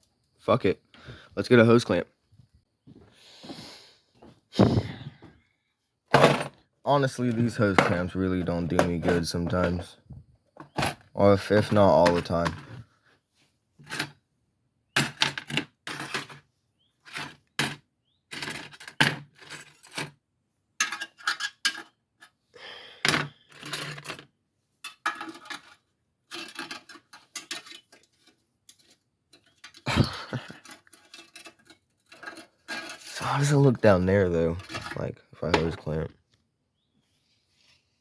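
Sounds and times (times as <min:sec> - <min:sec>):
metal clinking and rattling: 0:20.8 - 0:22.0, 0:23.1 - 0:33.6.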